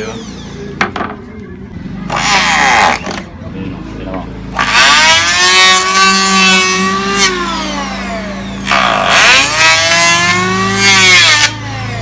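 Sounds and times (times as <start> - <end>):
power tool motor whine: 0.0 - 0.8, 2.0 - 3.3, 4.5 - 12.0.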